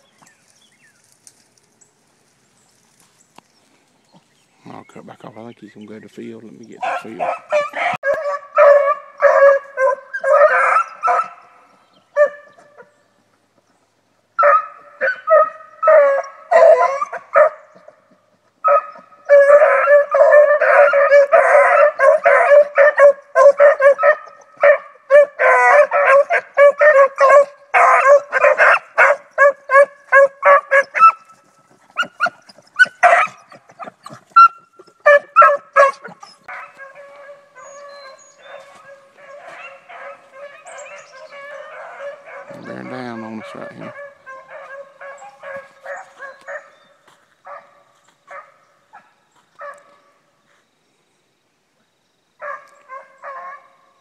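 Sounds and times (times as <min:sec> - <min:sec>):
beagles baying: 0:06.5 - 0:13.4, 0:14.4 - 0:50.2, 0:52.4 - 0:54.0.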